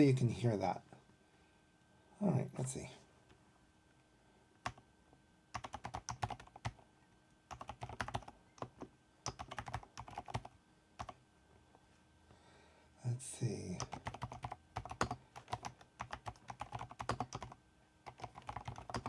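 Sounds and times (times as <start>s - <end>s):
mechanical keyboard typing: 5.6s - 6.8s, 7.5s - 11.2s, 13.8s - 19.0s.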